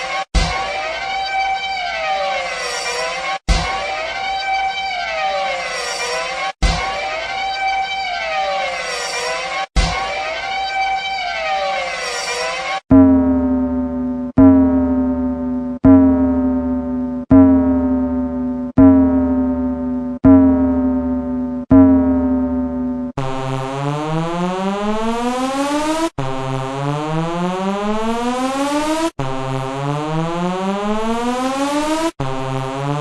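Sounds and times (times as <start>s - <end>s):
synthesized boom ringing tail: 12.9s - 23.1s.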